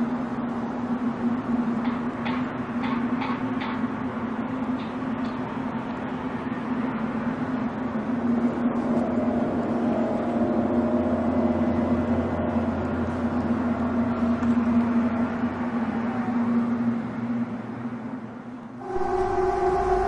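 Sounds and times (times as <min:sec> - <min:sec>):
deeper hum: 0:18.8 - 0:20.0
steady low drone: 0:18.8 - 0:20.0
wavering higher tone: 0:18.8 - 0:20.0.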